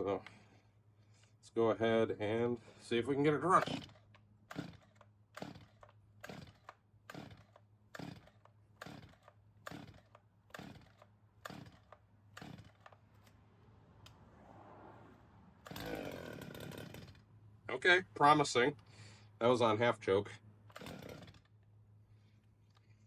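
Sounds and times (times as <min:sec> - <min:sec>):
chainsaw starter cord pulls: 0:03.0 - 0:13.4, 0:15.6 - 0:17.3, 0:20.6 - 0:21.7.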